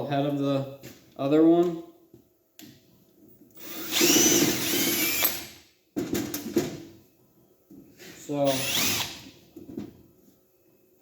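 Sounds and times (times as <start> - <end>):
cordless drill motor whine: 3.6 - 5.5, 8.5 - 9.2
drill clicking: 3.6 - 5.5, 8.5 - 9.2.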